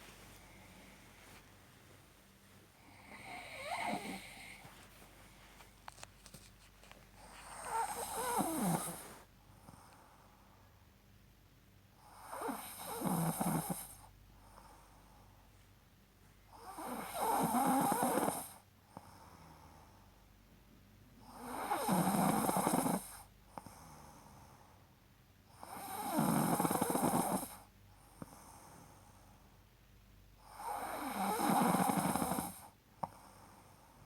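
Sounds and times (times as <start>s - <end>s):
quiet breaths: 0.0s - 11.2s, 11.8s - 34.0s
person snoring: 2.8s - 4.6s, 7.4s - 9.1s.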